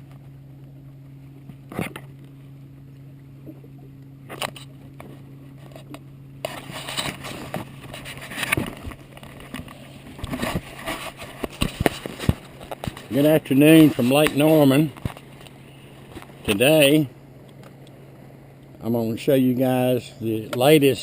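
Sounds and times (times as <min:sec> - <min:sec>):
boat motor humming: 0:00.0 - 0:21.0
rustling and clattering: 0:04.3 - 0:16.4.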